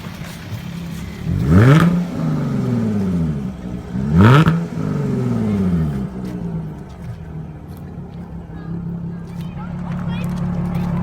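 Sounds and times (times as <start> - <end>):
car engine revving and idling: 0.0 - 11.0.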